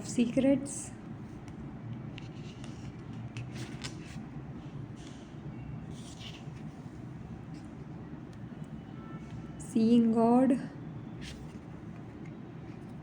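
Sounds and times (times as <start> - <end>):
low steady hum: 0.0 - 13.0
cards rustling and clicking: 1.4 - 4.3.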